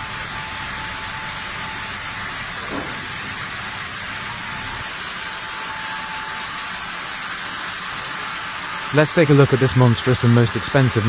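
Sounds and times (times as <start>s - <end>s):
wood-processing machinery running: 0.0s - 11.0s.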